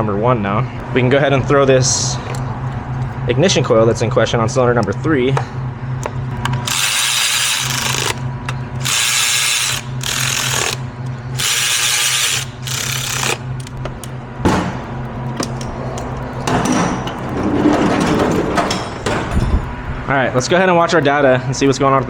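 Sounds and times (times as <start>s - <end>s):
ratchet clicking: 6.0s - 14.1s.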